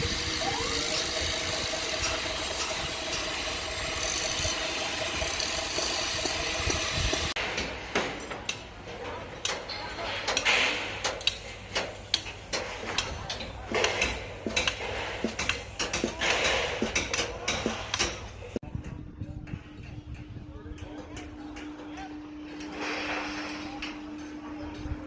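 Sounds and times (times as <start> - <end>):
clicks and knocks of rebar handled: 7.6 - 18.4.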